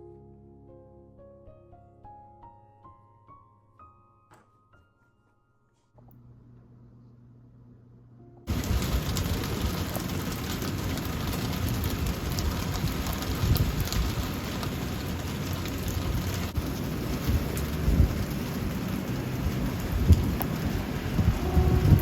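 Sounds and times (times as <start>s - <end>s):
low rumbles of thunder: 8.5s - 22.0s
steady rain falling: 8.5s - 22.0s.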